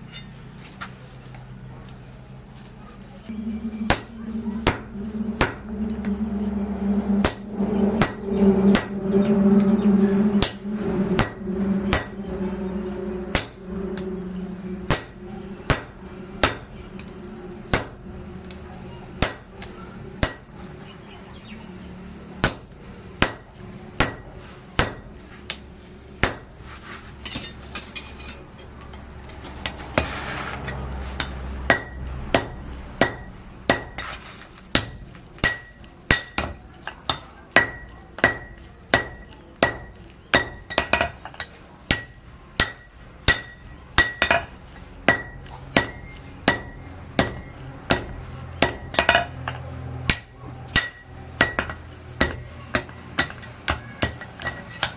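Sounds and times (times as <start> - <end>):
steady machine hum: 3.3 - 20.6
hammer striking iron on anvil: 13.0 - 14.1, 14.9 - 17.0, 17.7 - 18.0, 22.4 - 24.2, 24.8 - 25.0, 26.2 - 26.5, 31.7 - 34.0, 34.8 - 41.2, 41.9 - 44.5, 45.1 - 49.2, 50.1 - 54.9.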